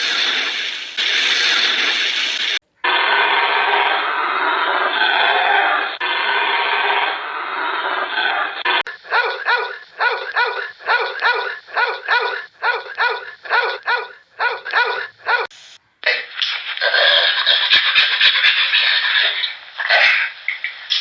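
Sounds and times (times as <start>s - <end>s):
steady hissing noise: 0.0s - 2.6s, 8.9s - 16.8s
dog barking rapidly: 8.9s - 15.5s.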